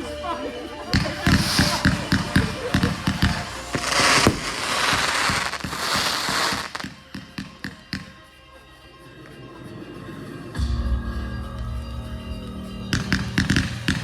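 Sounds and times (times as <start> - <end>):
fireworks crackling hiss: 0.0 - 10.6, 12.9 - 14.0
fireworks popping: 0.9 - 8.3, 13.0 - 14.0.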